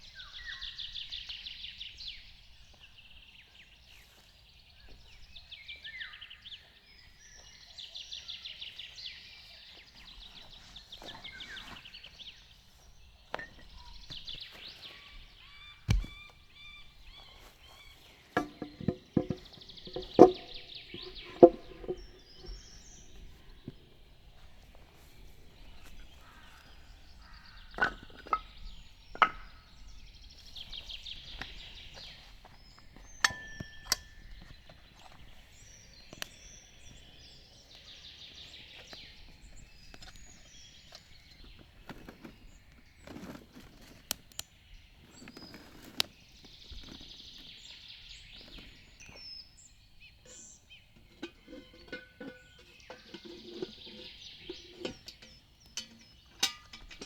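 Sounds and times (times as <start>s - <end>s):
songbird singing: 0.0s - 57.0s
knocks and clinks of gear: 30.5s - 44.4s.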